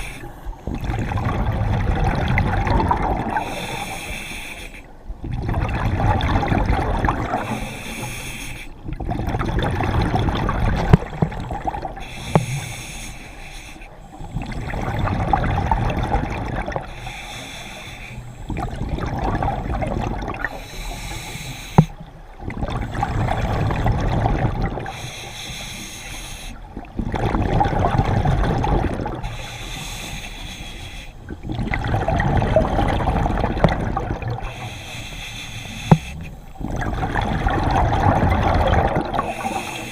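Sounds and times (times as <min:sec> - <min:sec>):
diver breathing through regulator: 0:00.0 - 0:01.3, 0:03.2 - 0:04.9, 0:07.3 - 0:08.8, 0:11.9 - 0:15.0, 0:16.7 - 0:22.0, 0:24.8 - 0:26.7, 0:29.2 - 0:33.1, 0:34.3 - 0:37.0, 0:39.0 - 0:39.9
bubbling exhalations: 0:31.4 - 0:34.8, 0:35.8 - 0:39.9.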